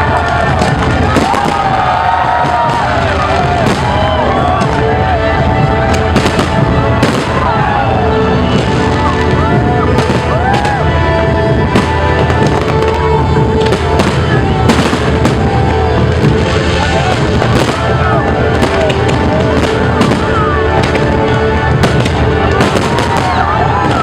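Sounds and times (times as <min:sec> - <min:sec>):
fireworks bursting: 0:00.0 - 0:24.0
music playing: 0:00.0 - 0:24.0.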